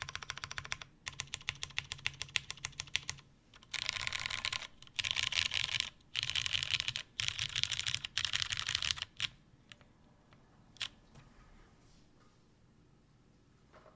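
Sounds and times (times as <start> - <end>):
fast typing on mechanical keyboard: 0.0 - 9.8, 10.8 - 11.0.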